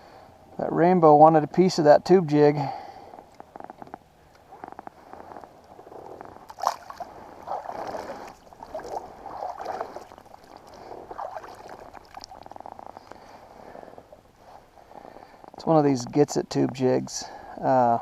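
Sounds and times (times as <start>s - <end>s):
water splashing against kayak: 6.4s - 12.6s.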